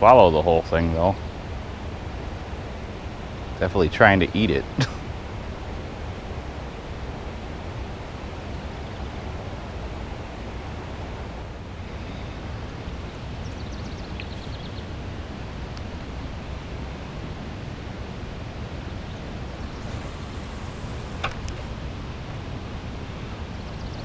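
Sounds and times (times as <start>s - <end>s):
steady outdoor rushing noise: 0.0s - 24.0s.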